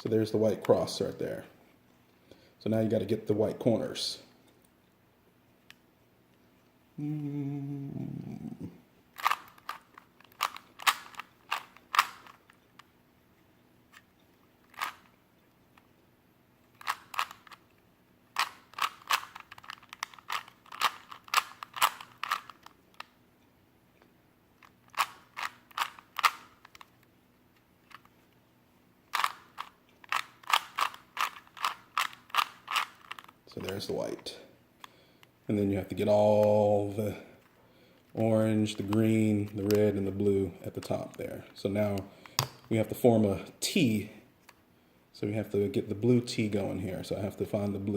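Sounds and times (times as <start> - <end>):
plastic cube layers clicking: 9.2 - 12.6, 14.7 - 15.2, 16.8 - 17.7, 18.4 - 23.1, 24.6 - 27.0, 29.1 - 33.8.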